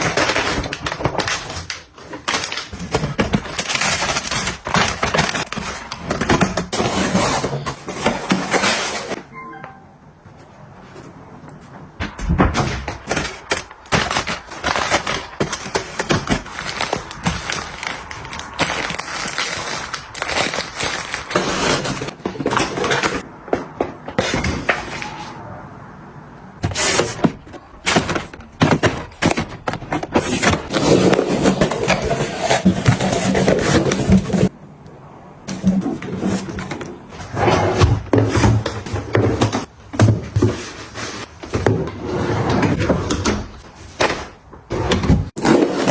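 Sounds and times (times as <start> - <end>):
groceries clicking and knocking: 0.0 - 9.2, 10.6 - 25.3, 26.6 - 34.6, 35.4 - 45.9.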